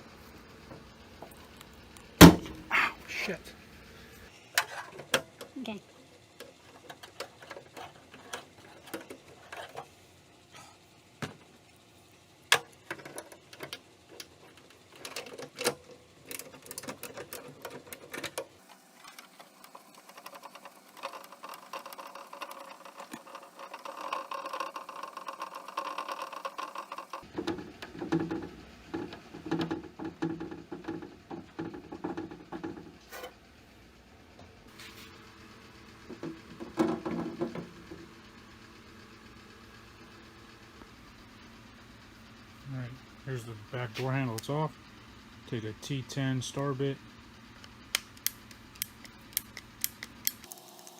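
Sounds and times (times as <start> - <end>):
rapid mechanical clicking and rattling: 4.6 - 10.0, 12.4 - 33.0, 42.1 - 50.9
hand tools clicking on metal: 47.9 - 50.5.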